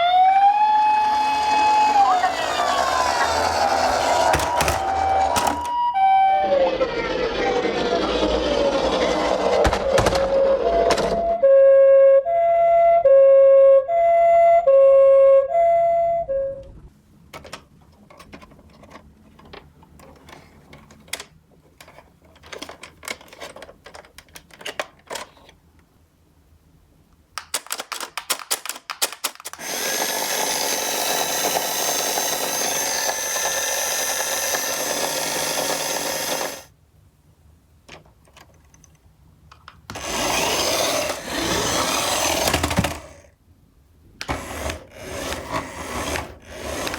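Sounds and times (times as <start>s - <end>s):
toy cars rattling down slope: 0.0s - 5.7s, 6.7s - 10.6s, 27.5s - 36.7s, 39.9s - 43.3s, 44.3s - 46.9s
two-tone ambulance siren: 0.0s - 7.7s, 10.4s - 16.6s
toy cars clicking and clacking: 1.0s - 5.7s, 27.4s - 36.7s, 38.3s - 43.3s, 44.2s - 46.9s.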